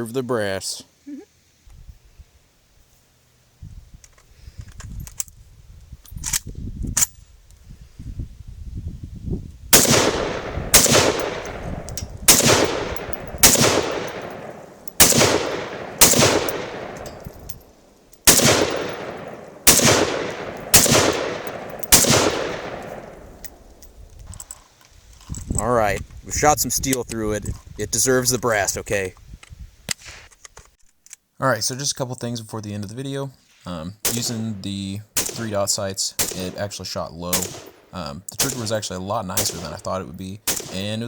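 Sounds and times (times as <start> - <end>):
gun handling clicks: 4.0 - 7.6, 9.8 - 26.2, 29.2 - 31.3, 34.1 - 34.4, 35.2 - 35.5, 36.2 - 36.6, 37.3 - 38.7, 39.4 - 39.8, 40.5 - 40.8
pistol gunshots with echo: 9.7 - 17.6, 18.2 - 23.7, 34.0 - 34.4, 35.2 - 35.6, 36.2 - 36.7, 37.3 - 38.8, 39.4 - 39.9, 40.5 - 40.9.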